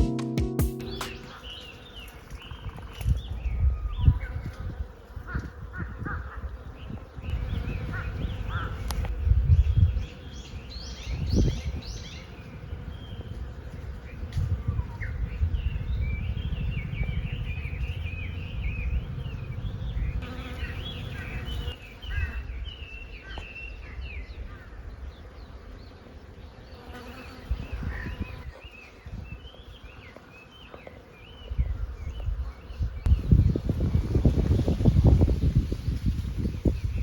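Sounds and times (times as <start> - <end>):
small birds chirping: 0.8 - 37.0
low buzzing drone: 16.8 - 21.6.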